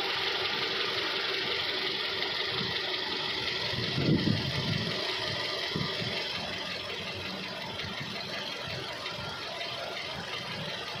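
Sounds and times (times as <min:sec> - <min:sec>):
car engine idling with knock: 0:00.0 - 0:11.0.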